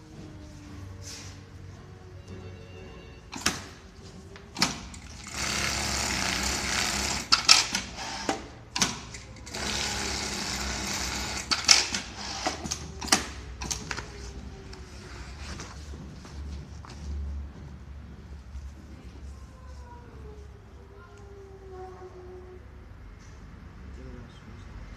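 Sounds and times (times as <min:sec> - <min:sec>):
sewing machine whirring: 0:04.6 - 0:13.8
sharp mechanical clicks and knocks: 0:07.0 - 0:09.8, 0:11.3 - 0:14.0.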